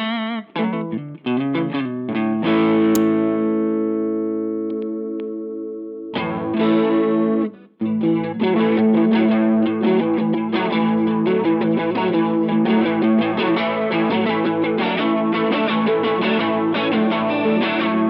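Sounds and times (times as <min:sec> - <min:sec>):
electric guitar chords with chorus: 0:08.7 - 0:18.0.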